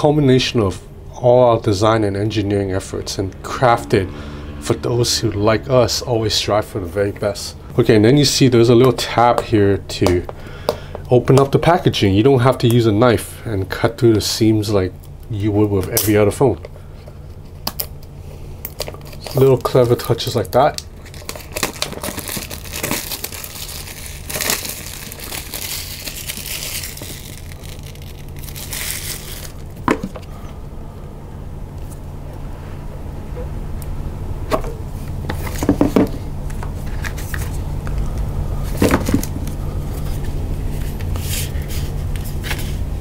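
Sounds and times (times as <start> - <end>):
steady low hum: 0.0 - 43.0
paper and cardboard rustling: 18.8 - 30.3, 35.2 - 37.6, 38.6 - 42.8.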